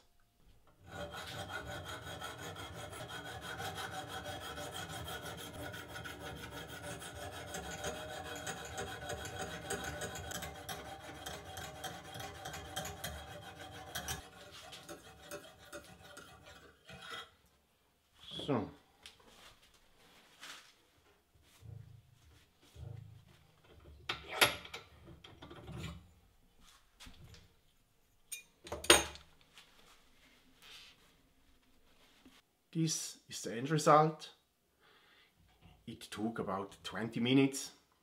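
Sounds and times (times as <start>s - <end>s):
sharpening stone rasping on blade: 0.9s - 17.4s.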